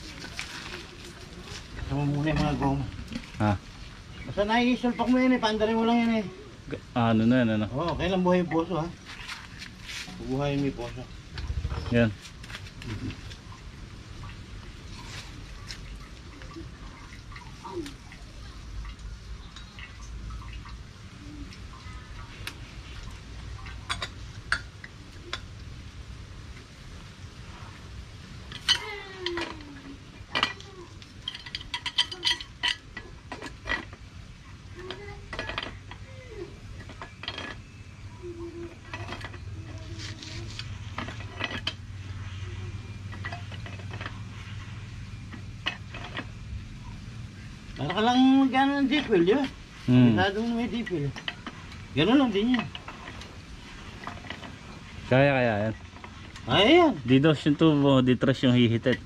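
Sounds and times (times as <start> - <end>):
metal pipe fittings clinking: 28.5 - 29.7, 30.3 - 34.0, 34.8 - 36.1, 36.7 - 37.7, 38.5 - 41.8, 42.9 - 44.6, 45.2 - 46.4, 47.8 - 53.3.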